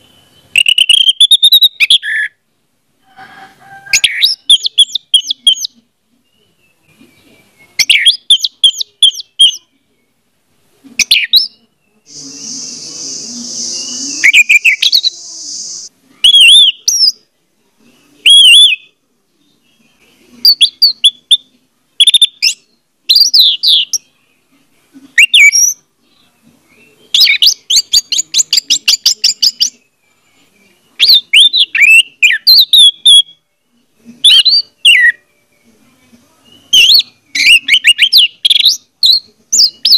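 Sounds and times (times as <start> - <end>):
bird whistled song: 0.0 - 2.4, 3.9 - 10.2, 11.0 - 17.2, 18.2 - 18.9, 19.6 - 24.2, 25.2 - 25.8, 26.7 - 29.9, 31.0 - 33.6, 34.2 - 35.6, 36.5 - 39.9
hiss: 12.1 - 14.3.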